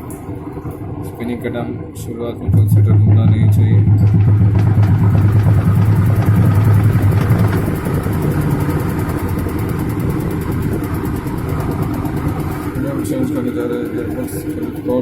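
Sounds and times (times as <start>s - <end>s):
low mechanical hum and rattle: 0.0s - 15.0s
washing machine spinning: 0.0s - 15.0s.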